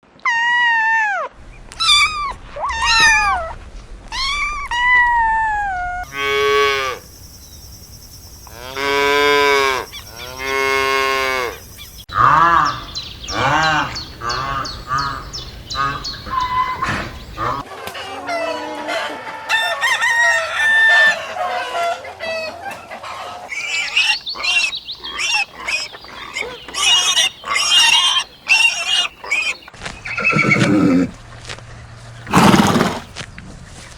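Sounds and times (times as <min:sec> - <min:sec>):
chickens clucking: 0:12.2 - 0:19.3, 0:21.0 - 0:31.1
rooster crowing: 0:18.9 - 0:22.0
short falling animal calls: 0:30.1 - 0:31.2.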